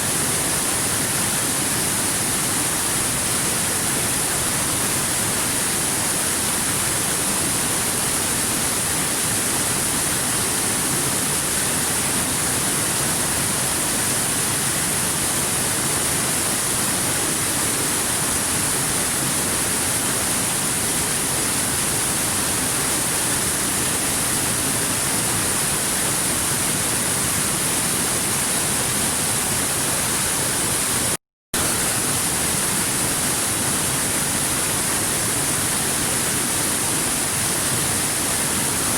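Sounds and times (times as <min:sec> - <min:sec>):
stream water rushing over rocks: 0:00.0 - 0:38.9.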